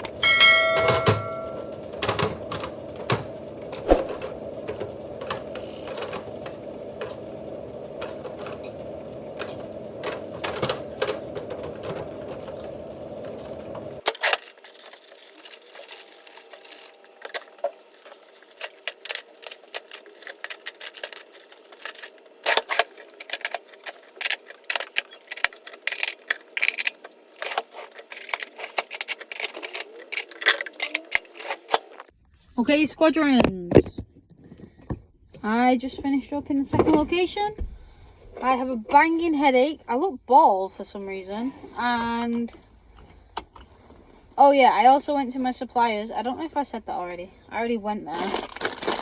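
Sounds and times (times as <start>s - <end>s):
steady hum: 0.0s - 32.1s.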